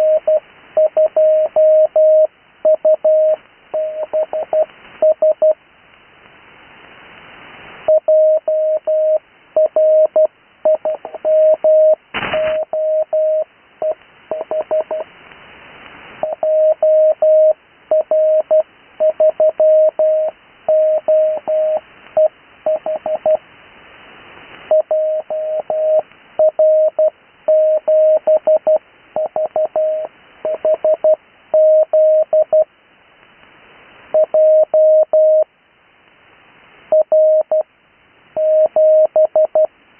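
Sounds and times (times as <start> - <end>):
radio band hiss: 12.0 - 12.7
burst of static: 12.0 - 13.0
morse code tone: 12.6 - 15.0, 38.4 - 39.7.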